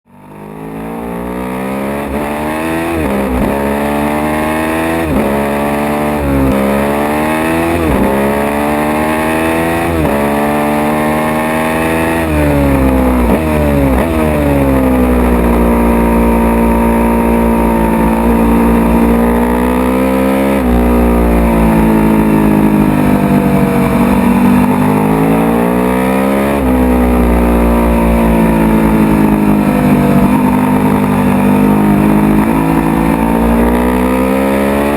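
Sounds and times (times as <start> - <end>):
motorcycle engine accelerating: 0.1 - 34.9.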